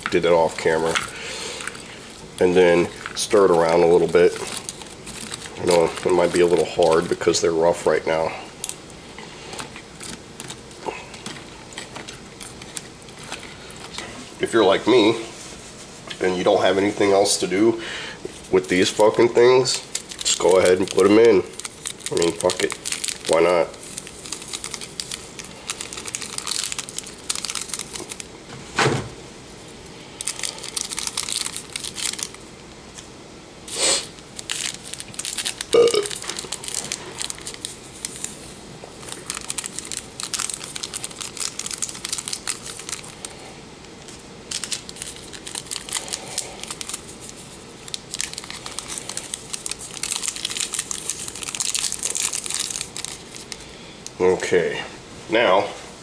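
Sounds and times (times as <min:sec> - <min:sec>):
dry noodles crackling in a bowl: 0:00.0 - 0:07.4, 0:19.8 - 0:28.3, 0:30.2 - 0:32.4, 0:34.1 - 0:53.6.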